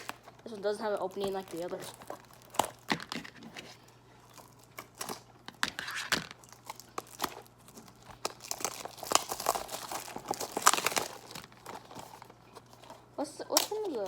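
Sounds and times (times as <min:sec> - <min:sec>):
package crinkling and tearing: 0:00.0 - 0:14.0.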